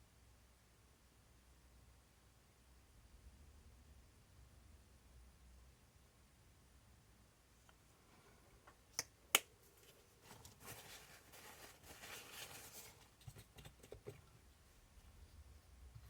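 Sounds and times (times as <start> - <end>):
soft rustling: 9.6 - 16.0.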